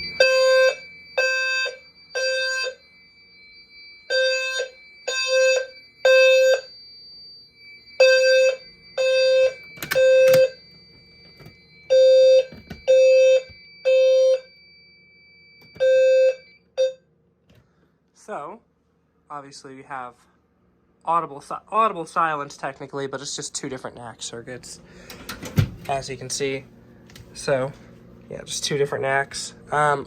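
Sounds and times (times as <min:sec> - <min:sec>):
fire alarm horns blasting: 0:00.0 - 0:17.1.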